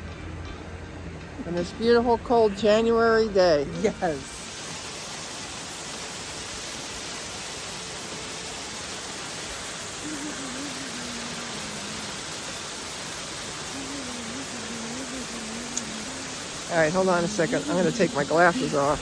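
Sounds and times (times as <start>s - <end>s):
waterfall rushing: 3.7s - 19.0s
faint wavering low hum: 10.0s - 19.0s.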